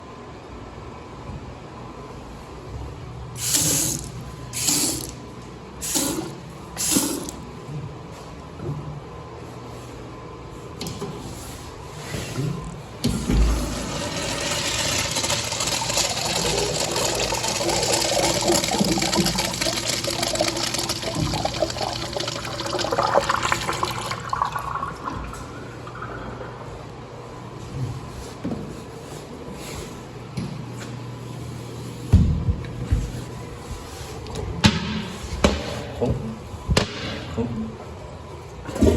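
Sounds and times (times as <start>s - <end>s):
toilet flushing: 13.1s - 27.1s
faucet spraying water into sink: 14.0s - 25.1s.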